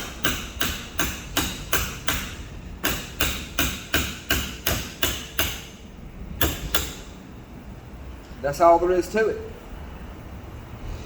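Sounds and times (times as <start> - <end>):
hammer tapping metal tool: 0.0 - 5.8, 6.4 - 7.2.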